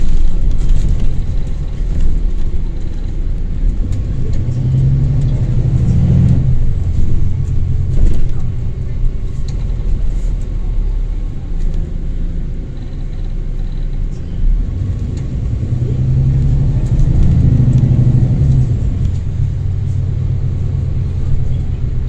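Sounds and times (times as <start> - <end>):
bus diesel engine running: 0.0 - 22.0
faint turbocharger whine: 0.0 - 22.0.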